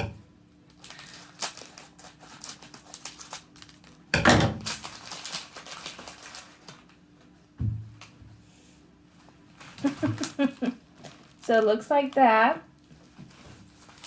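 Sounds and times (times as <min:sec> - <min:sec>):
plastic packaging crinkling: 0:00.6 - 0:07.1, 0:09.4 - 0:14.0.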